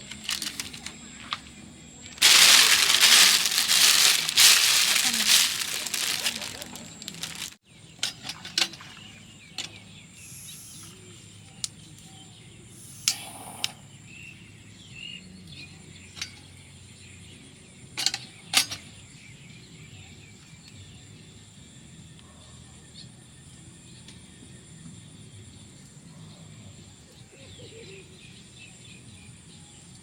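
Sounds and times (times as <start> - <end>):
faint insect drone: 9.0 - 30.0.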